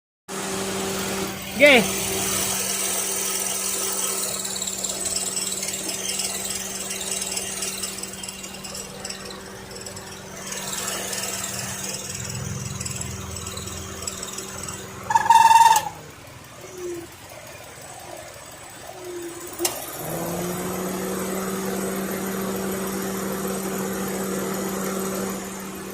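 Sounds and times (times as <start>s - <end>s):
car engine running: 0.3s - 25.9s
short loud high tone: 15.1s - 16.0s.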